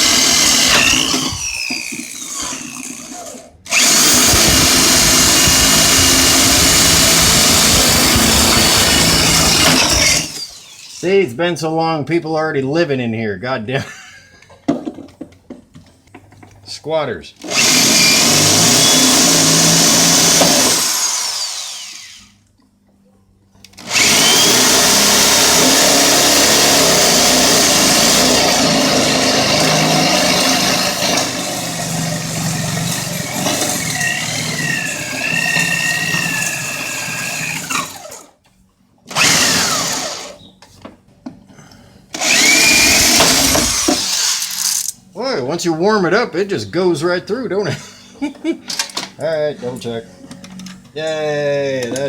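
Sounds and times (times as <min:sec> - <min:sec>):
electric drill boring through wood: 0:00.0 - 0:11.1, 0:17.4 - 0:22.4, 0:23.7 - 0:38.4, 0:39.1 - 0:40.5, 0:42.1 - 0:45.0.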